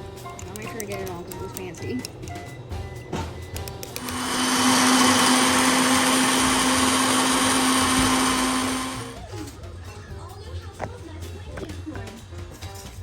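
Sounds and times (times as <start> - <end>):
electric blender motor whirring: 3.9 - 9.3.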